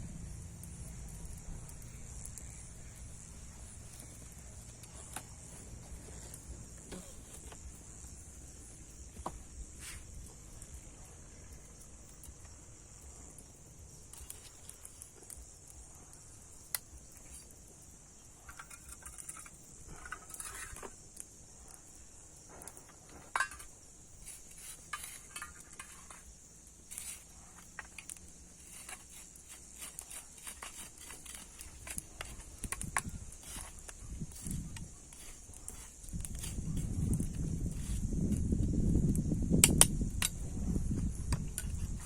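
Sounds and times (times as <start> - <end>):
insects chorus: 0.0 - 42.0
light clicks and rustles: 22.5 - 38.4.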